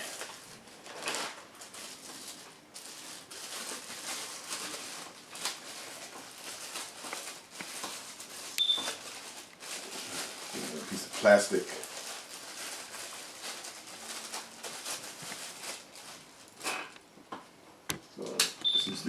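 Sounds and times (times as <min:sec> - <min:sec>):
plastic wrapping crinkling: 0:00.0 - 0:17.0
short high beep: 0:08.6 - 0:08.8, 0:18.6 - 0:19.0.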